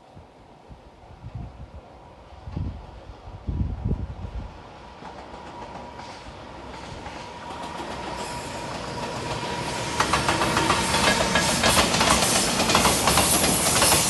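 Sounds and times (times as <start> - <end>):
freight train approaching: 0.0 - 14.0
wind thumping microphone: 0.7 - 4.7
wheels clattering on rails: 5.0 - 14.0.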